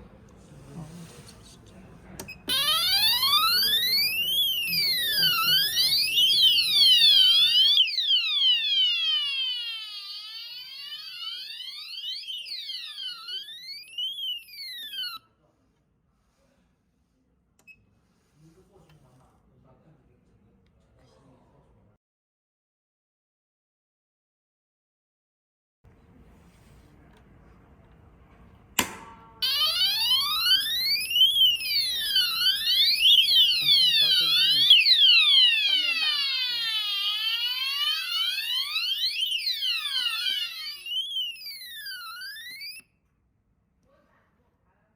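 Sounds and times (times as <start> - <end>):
fire alarm sweeping tone: 2.4 - 15.2, 29.4 - 42.8
sharp click: 28.8 - 29.3.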